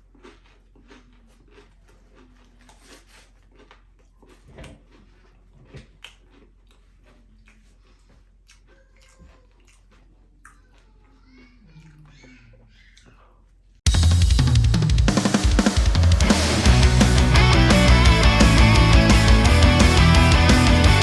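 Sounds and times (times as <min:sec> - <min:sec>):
person chewing food: 0:00.0 - 0:12.2.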